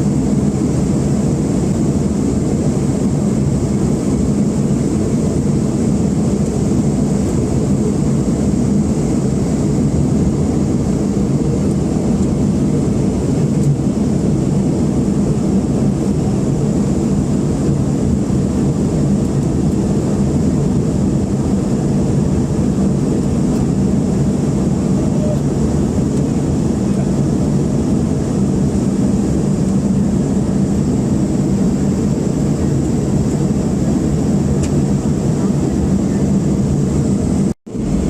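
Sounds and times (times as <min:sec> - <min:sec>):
airliner engine drone: 0:00.0 - 0:38.0
faint high whine: 0:24.6 - 0:25.6
rushing air: 0:25.6 - 0:38.0.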